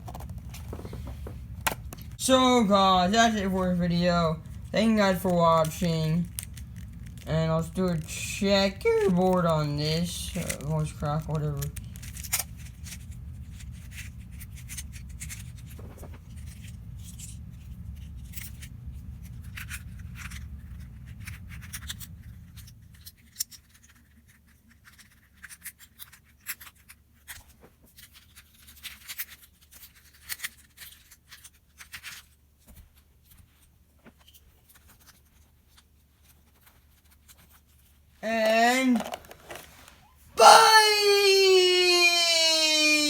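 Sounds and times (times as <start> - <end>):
plastic puzzle clicking: 5.2 - 13.0.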